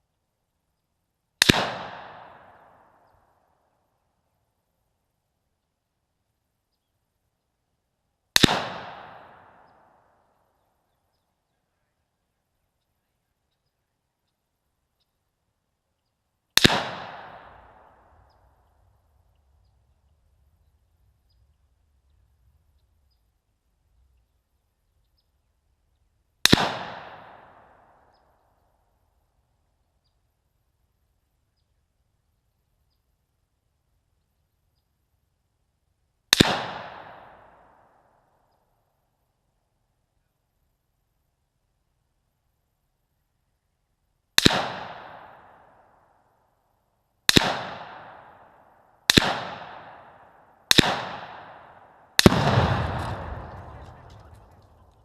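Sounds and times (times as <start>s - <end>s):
gunshots with echo: 1.4s - 2.6s, 8.4s - 9.7s, 16.6s - 18.0s, 26.5s - 27.7s, 36.4s - 37.6s, 44.4s - 45.5s, 47.3s - 48.4s, 49.1s - 55.0s
sharp cracks: 1.4s - 2.8s, 8.4s - 9.8s, 16.6s - 18.1s, 26.4s - 27.9s, 36.3s - 37.8s, 44.4s - 45.7s, 47.3s - 48.4s, 49.1s - 55.0s
explosion echo: 52.2s - 55.0s
loud explosion blast: 52.3s - 54.8s.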